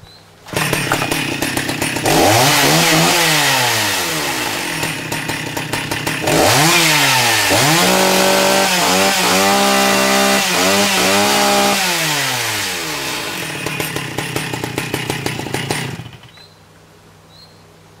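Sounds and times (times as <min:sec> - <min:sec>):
chainsaw engine revving: 0:00.5 - 0:16.4.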